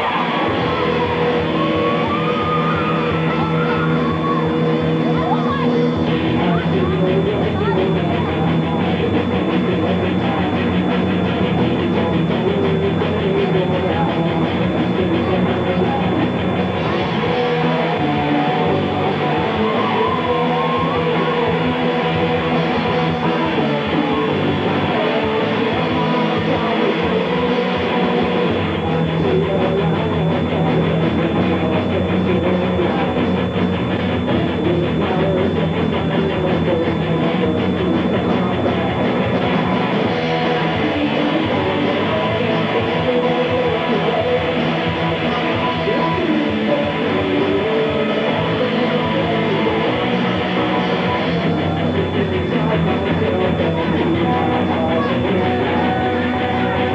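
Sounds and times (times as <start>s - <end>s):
amplified guitar: 0.0s - 56.9s
drum kit: 0.0s - 56.9s.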